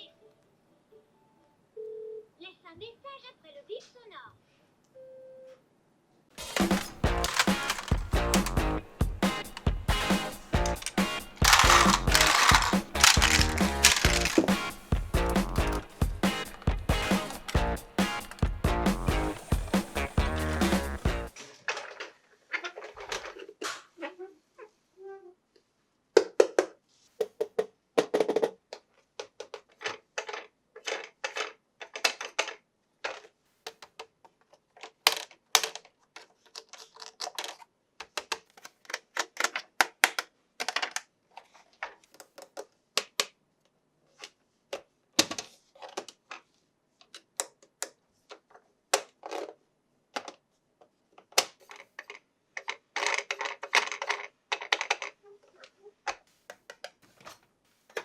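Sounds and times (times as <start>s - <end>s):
packaging rustling: 6.4s - 8.6s, 9.4s - 14.9s
plastic toy parts clicking: 6.4s - 8.7s, 9.4s - 17.6s, 28.2s - 41.1s, 51.2s - 57.0s.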